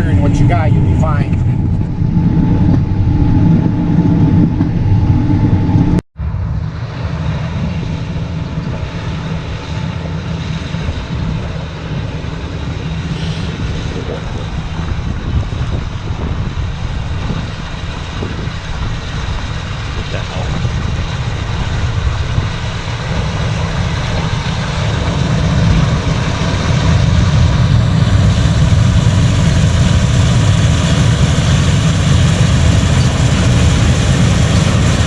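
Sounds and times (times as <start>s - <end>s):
vehicle engine running: 7.6s - 35.0s.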